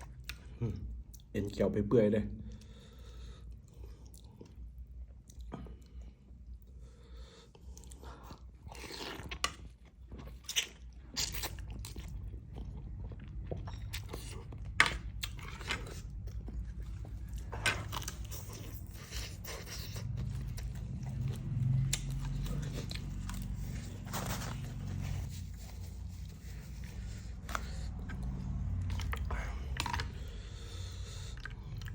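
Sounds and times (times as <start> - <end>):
person chewing food: 0.0 - 1.3, 2.5 - 31.9
low hum: 11.9 - 31.9.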